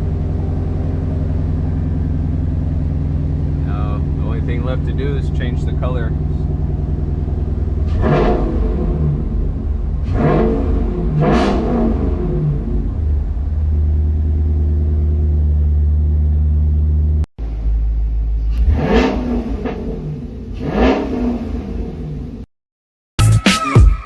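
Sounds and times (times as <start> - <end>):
car engine idling and revving: 0.0 - 22.5
music: 23.2 - 24.0.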